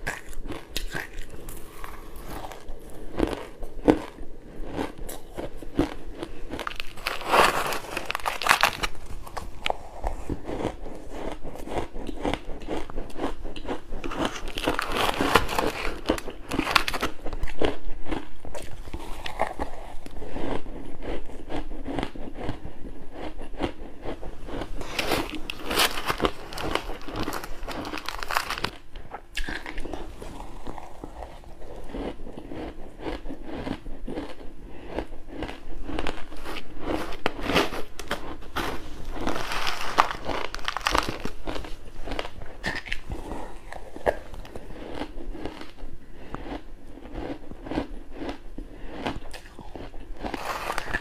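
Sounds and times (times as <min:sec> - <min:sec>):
person crunching ice: 0:00.0 - 0:22.6, 0:23.6 - 0:45.8, 0:46.4 - 0:51.0.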